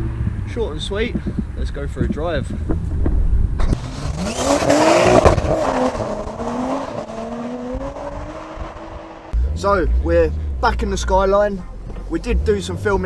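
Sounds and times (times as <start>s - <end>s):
tyre and road noise: 2.7s - 9.4s
car engine driving: 3.7s - 9.4s.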